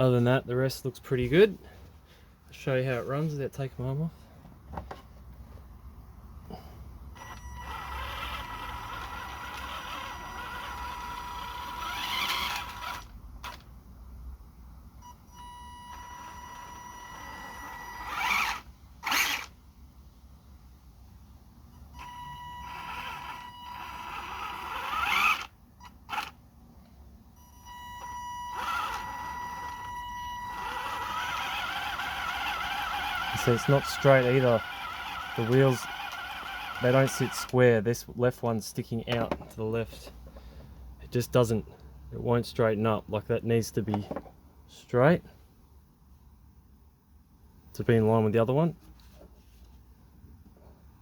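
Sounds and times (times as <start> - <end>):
toy car motor whine: 7.2 - 13.7, 15.8 - 19.6, 22.0 - 26.4, 27.6 - 37.5.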